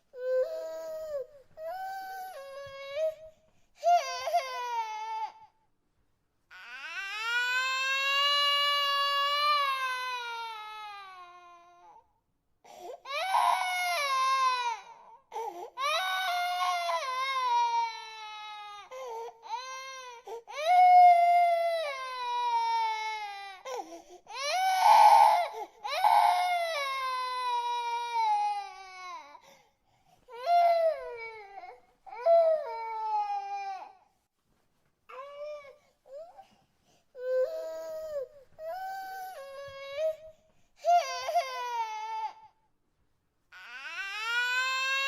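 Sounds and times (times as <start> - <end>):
baby crying: 0.1 - 5.5, 13.0 - 29.4, 37.2 - 42.5.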